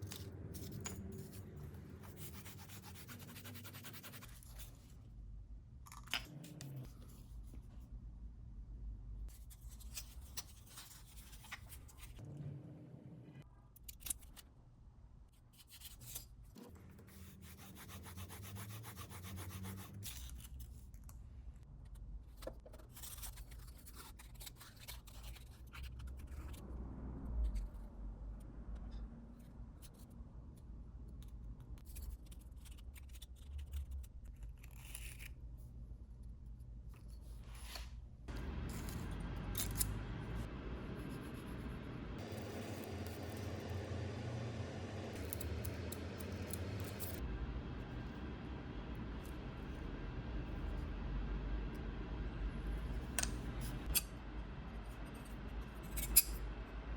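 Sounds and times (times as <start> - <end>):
low hum: 10.0 - 13.7, 26.0 - 29.8, 38.1 - 56.9.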